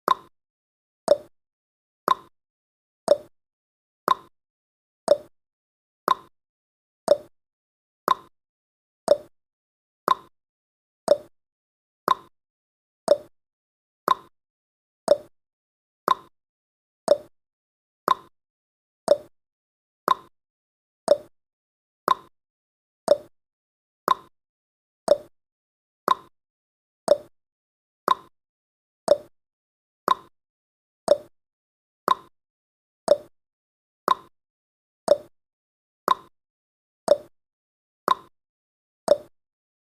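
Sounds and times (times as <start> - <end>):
clock-like timer ticking: 0.1 - 0.3, 1.1 - 1.3, 2.1 - 2.3, 3.1 - 3.3, 4.1 - 4.3, 5.1 - 5.3, 6.1 - 6.3, 7.1 - 7.3, 8.1 - 8.3, 9.1 - 9.3, 10.1 - 10.3, 11.1 - 11.3, 12.1 - 12.3, 13.1 - 13.3, 14.1 - 14.3, 15.1 - 15.3, 16.1 - 16.3, 17.1 - 17.3, 18.1 - 18.3, 19.1 - 19.3, 20.1 - 20.3, 21.1 - 21.3, 22.1 - 22.3, 23.1 - 23.3, 24.1 - 24.3, 25.1 - 25.3, 26.1 - 26.3, 27.1 - 27.3, 28.1 - 28.3, 29.1 - 29.3, 30.1 - 30.3, 31.1 - 31.3, 32.1 - 32.3, 33.1 - 33.3, 34.1 - 34.3, 35.1 - 35.3, 36.1 - 36.3, 37.1 - 37.3, 38.1 - 38.3, 39.1 - 39.3.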